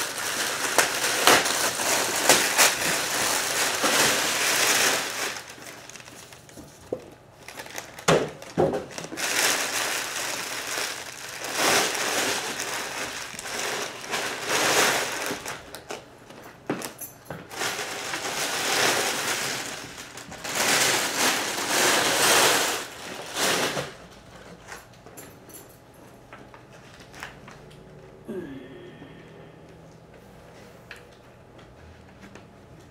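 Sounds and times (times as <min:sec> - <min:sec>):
packaging rustling and crinkling: 0:00.0 - 0:24.8.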